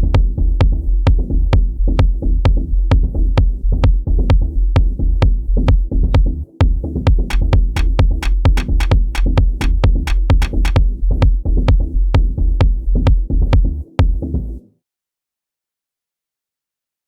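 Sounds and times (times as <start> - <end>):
deep heavy bass: 0.0 - 14.6
electronic drum beat: 3.8 - 14.2.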